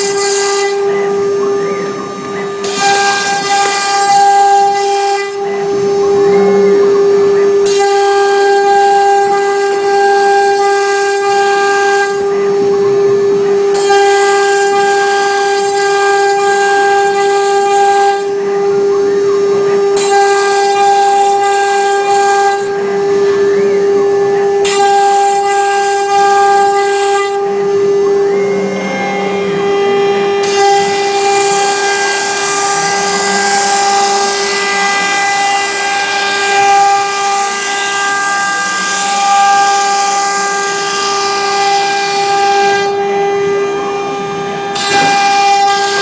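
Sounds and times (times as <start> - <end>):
router bit cutting wood: 0.0 - 46.0
router spindle whine: 0.0 - 46.0.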